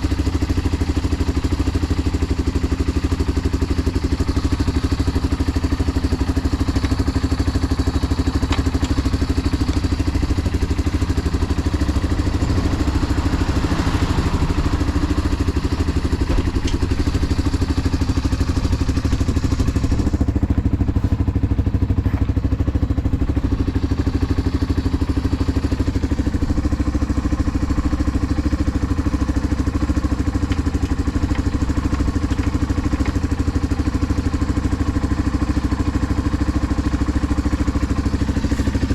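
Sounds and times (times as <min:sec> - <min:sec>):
motorcycle engine idling: 0:00.0 - 0:38.9.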